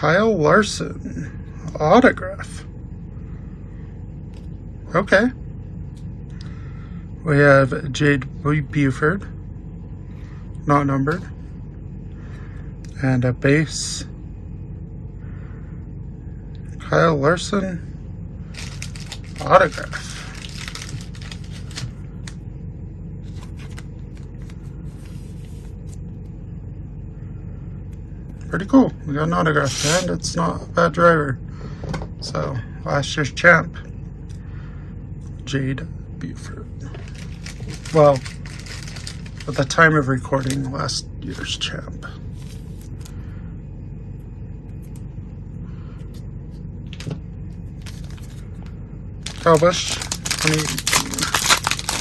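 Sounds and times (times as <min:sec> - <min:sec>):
low hum: 0:00.0 - 0:52.0
steady low rumble: 0:00.0 - 0:52.0
cards sliding against each other: 0:29.6 - 0:30.1.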